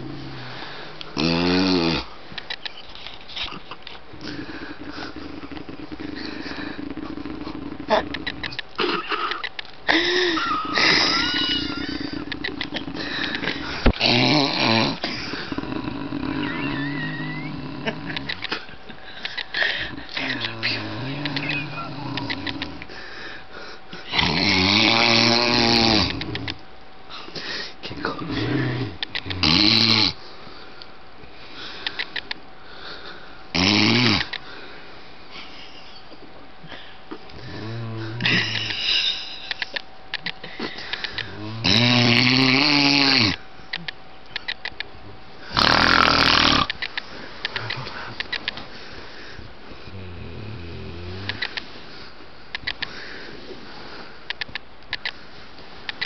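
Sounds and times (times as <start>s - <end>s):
man snoring heavily: 1.2s - 2.1s, 12.9s - 18.1s, 24.1s - 26.4s, 28.2s - 30.2s, 33.6s - 34.3s, 37.4s - 38.4s, 41.3s - 43.4s, 45.5s - 46.7s.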